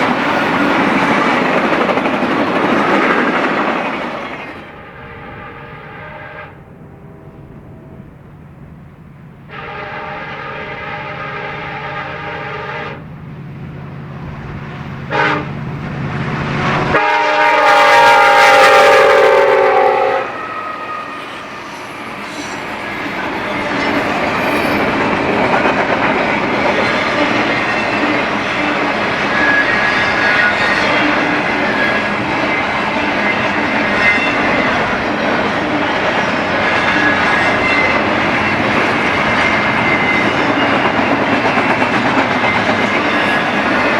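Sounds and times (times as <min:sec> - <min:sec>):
train wheels rumbling on rails: 0:00.0 - 0:43.9
locomotive air horn blasts: 0:04.7 - 0:08.2, 0:09.4 - 0:13.1, 0:15.0 - 0:15.6, 0:16.4 - 0:22.5.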